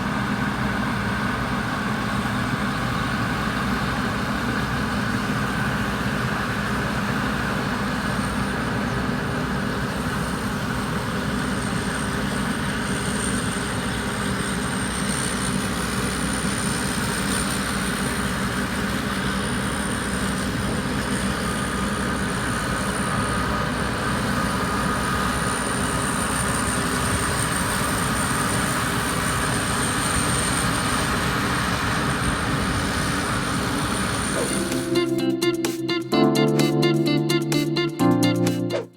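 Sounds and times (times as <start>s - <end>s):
combine harvester engine drone: 0.0s - 38.3s
thin high whine: 34.2s - 38.9s.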